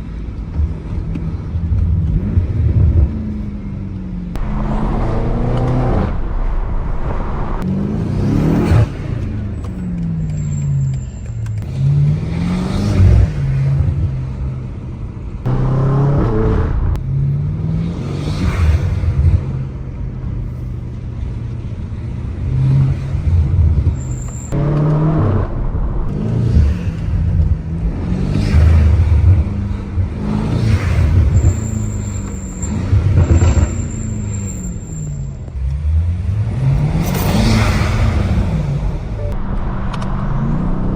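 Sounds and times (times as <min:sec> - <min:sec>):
car engine revving: 0:01.6 - 0:10.6, 0:15.4 - 0:19.8, 0:22.4 - 0:34.7, 0:35.6 - 0:40.9
exhaust burst: 0:04.4 - 0:09.0, 0:24.6 - 0:27.4, 0:37.4 - 0:40.9.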